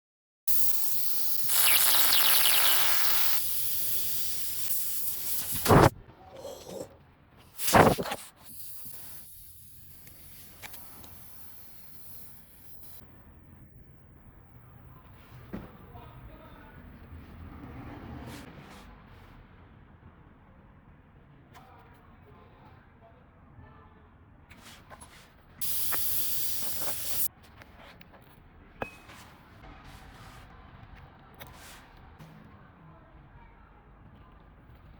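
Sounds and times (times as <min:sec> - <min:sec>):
air hissing: 0:00.5 - 0:06.9, 0:07.5 - 0:13.0, 0:25.6 - 0:27.3.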